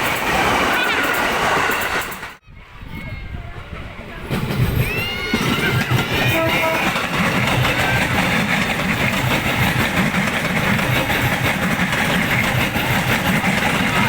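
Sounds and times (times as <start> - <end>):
electric train wheels rumbling: 3.8 - 14.0.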